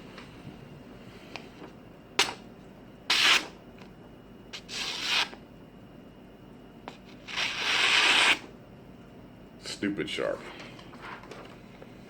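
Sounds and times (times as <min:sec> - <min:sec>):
blade slicing paper: 0:03.1 - 0:03.6, 0:04.6 - 0:05.4, 0:07.2 - 0:08.5.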